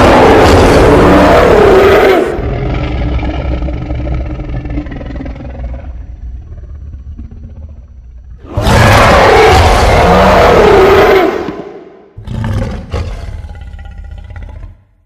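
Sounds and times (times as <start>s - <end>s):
monster roar: 0.0s - 5.8s, 8.4s - 14.8s.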